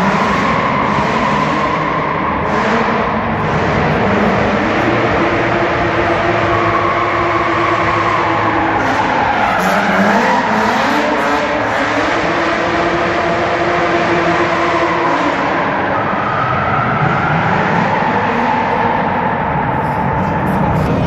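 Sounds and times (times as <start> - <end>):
car engine revving hard: 0.0 - 15.9.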